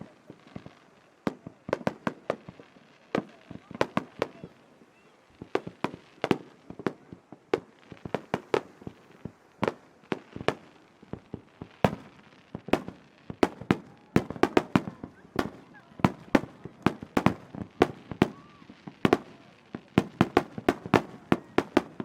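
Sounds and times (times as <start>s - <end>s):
fireworks bangs with echo: 0.0s - 22.0s.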